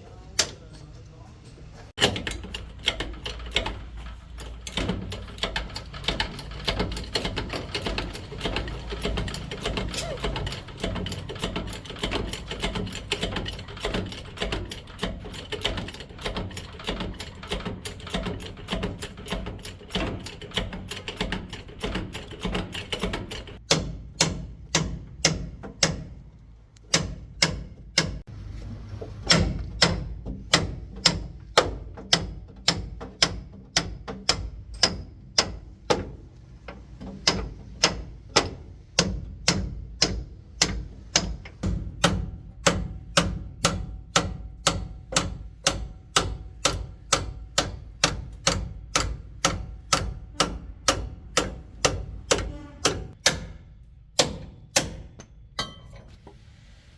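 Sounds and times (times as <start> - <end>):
fast metallic rattling: 1.9 - 23.6.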